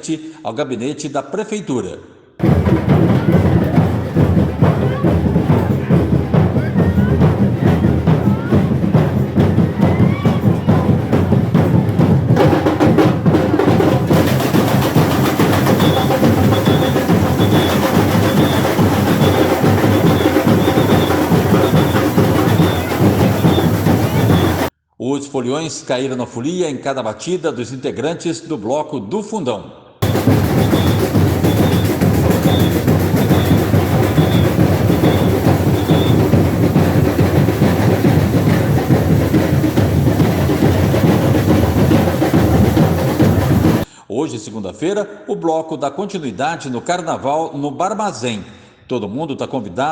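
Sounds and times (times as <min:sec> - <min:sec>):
samba drums playing: 0:02.4 - 0:24.7, 0:30.0 - 0:43.8.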